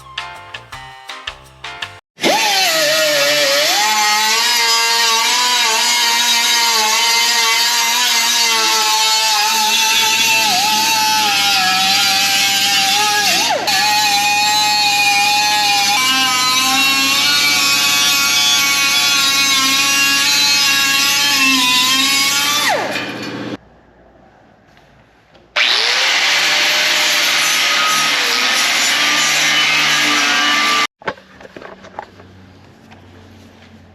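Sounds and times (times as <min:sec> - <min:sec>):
power tool running on sheet metal: 0:02.2 - 0:23.6, 0:25.6 - 0:30.9.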